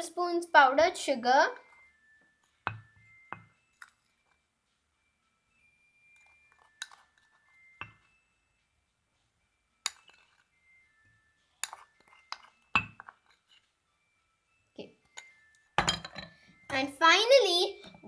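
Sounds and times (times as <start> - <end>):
spoon clinking against a mug: 1.6 - 4.4, 6.0 - 8.2, 9.8 - 10.6, 11.6 - 13.7, 15.0 - 16.9.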